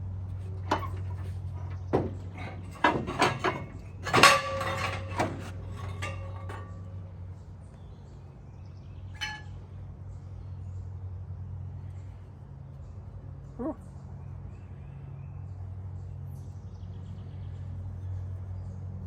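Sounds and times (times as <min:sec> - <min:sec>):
low steady hum: 0:00.0 - 0:07.5, 0:09.2 - 0:09.8
metal tools clinking: 0:00.4 - 0:07.0, 0:09.2 - 0:09.6.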